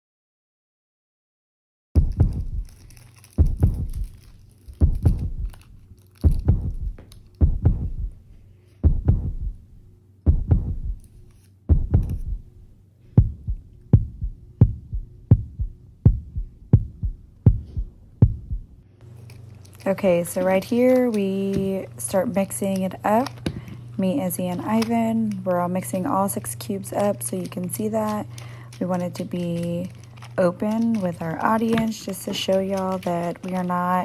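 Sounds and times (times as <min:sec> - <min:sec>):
deep heartbeat-like thumps: 0:02.0 - 0:02.8, 0:03.4 - 0:04.2, 0:04.8 - 0:05.6, 0:06.2 - 0:18.8
steady low hum: 0:02.0 - 0:34.0.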